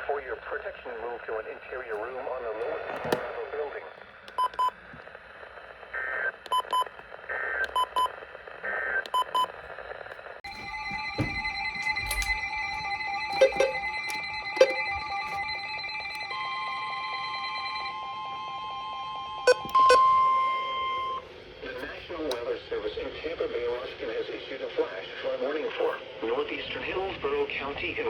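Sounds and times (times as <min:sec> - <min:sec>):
pulsing alert signal tones: 0:10.5 - 0:16.3
high steady tone: 0:10.5 - 0:21.3
electronic alert beeps and chirps: 0:10.6 - 0:15.6.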